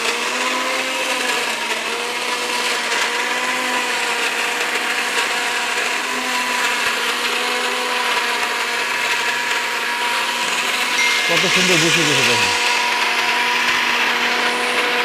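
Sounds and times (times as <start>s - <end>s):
mixer grinder motor whine: 0.0s - 15.0s.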